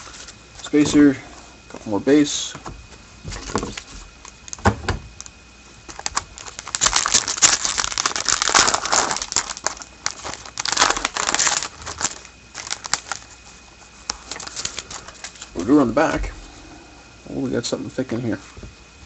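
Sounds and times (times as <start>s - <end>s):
card pack wrapper crinkling: 3.3s - 15.8s
cards being handled: 5.9s - 15.6s.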